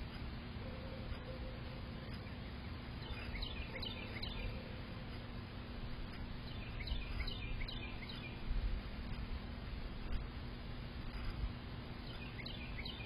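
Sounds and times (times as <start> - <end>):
low background noise: 0.0 - 13.0
bird chirping: 0.6 - 5.3, 6.1 - 9.3, 11.1 - 13.0.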